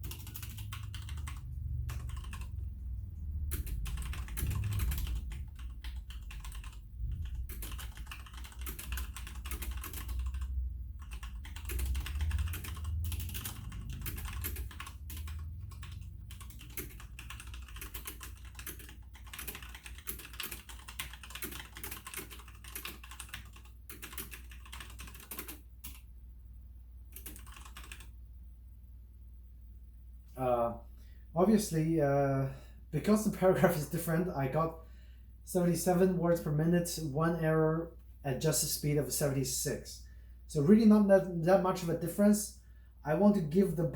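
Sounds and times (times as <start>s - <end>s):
fast mechanical keyboard typing: 0.0s - 26.1s, 27.1s - 28.1s.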